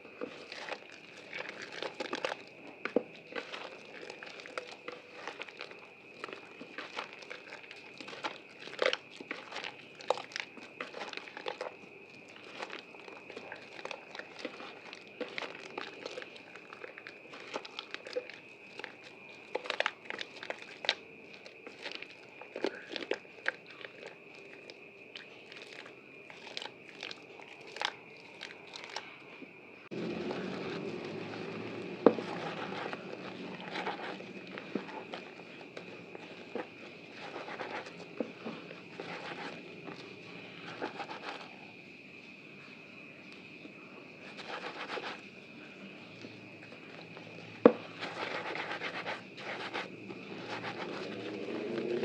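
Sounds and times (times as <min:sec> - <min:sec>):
crackling soap lather: 0:00.0 - 0:41.7, 0:43.4 - 0:52.0.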